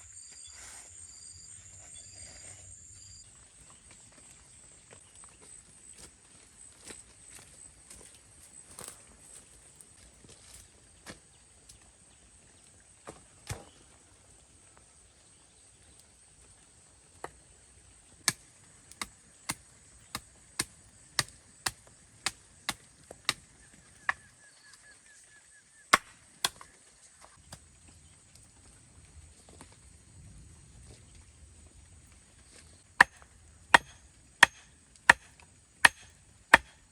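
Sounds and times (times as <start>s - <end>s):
sharp chopping strikes: 19.0s - 23.4s, 26.0s - 26.6s, 33.0s - 36.8s.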